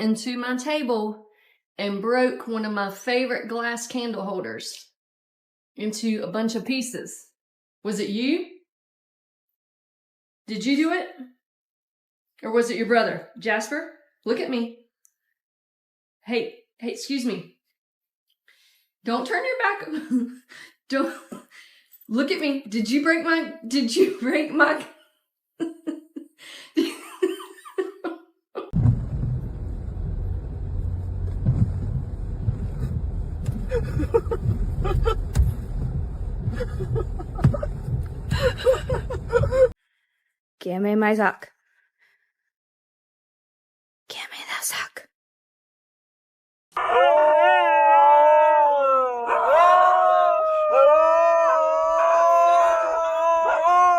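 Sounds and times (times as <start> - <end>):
car rumble from inside cabin: 28.8 - 39.8
dog howling: 46.8 - 53.9.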